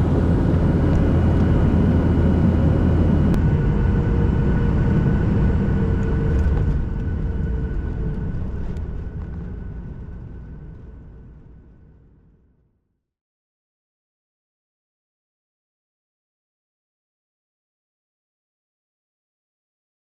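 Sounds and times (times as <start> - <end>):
jet engines rumbling in cabin: 0.0 - 12.6.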